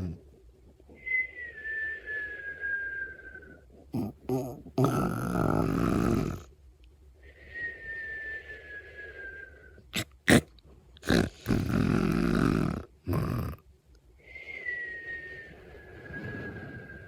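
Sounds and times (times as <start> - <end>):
person snoring: 0.0 - 0.2, 4.0 - 6.5, 10.0 - 10.4, 11.0 - 13.6
thin whistling tone: 0.9 - 3.6, 7.4 - 9.8, 14.2 - 17.0.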